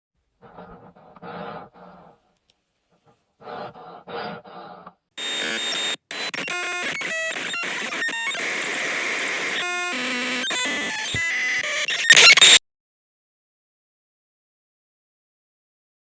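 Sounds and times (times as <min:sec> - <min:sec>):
growl-like bursts: 0:00.4 - 0:02.3, 0:03.0 - 0:05.0
glitching beeps and buzzing: 0:05.2 - 0:12.6
loud harsh static: 0:05.2 - 0:12.6.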